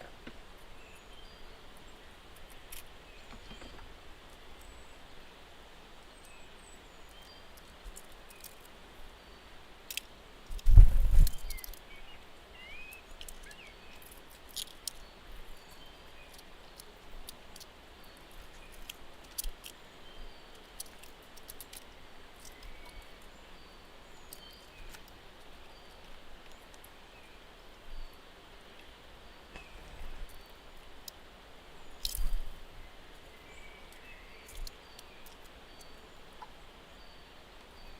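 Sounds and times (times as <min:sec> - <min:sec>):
steady hiss: 0:00.0 - 0:37.9.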